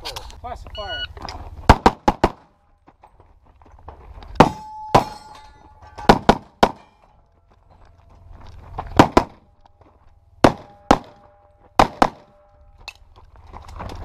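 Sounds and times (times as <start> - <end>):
steel target ringing: 4.4 - 7.4.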